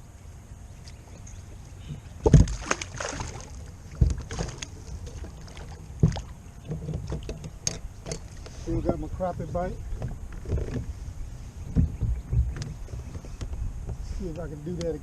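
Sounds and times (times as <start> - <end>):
wind and water rumble: 0.0 - 15.0
thumps on kayak: 2.2 - 3.3, 3.9 - 5.3, 6.0 - 8.3, 11.7 - 14.0.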